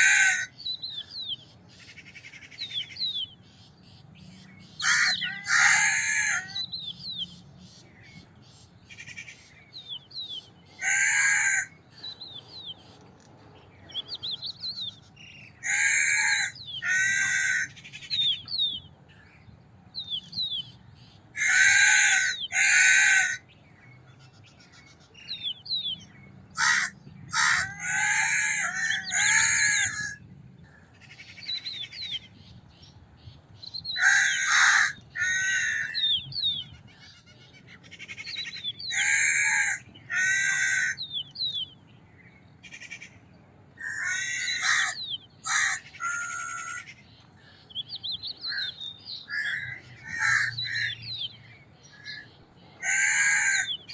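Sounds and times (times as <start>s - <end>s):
crows cawing: 0.0s - 0.6s, 4.8s - 6.6s, 10.8s - 11.8s, 15.6s - 17.9s, 21.4s - 23.4s, 26.6s - 31.3s, 34.0s - 36.2s, 38.0s - 41.1s, 43.8s - 47.0s, 48.4s - 51.1s, 51.9s - 53.9s.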